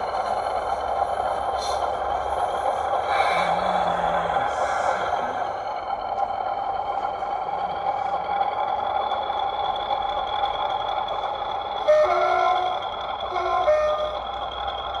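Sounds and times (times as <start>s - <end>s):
diesel locomotive engine running: 0.0s - 15.0s
two-tone train horn: 11.9s - 14.2s.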